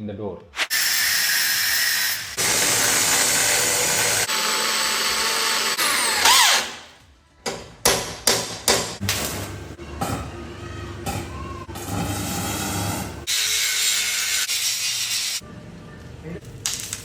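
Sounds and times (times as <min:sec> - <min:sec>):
power drill boring into metal: 0:00.7 - 0:06.8.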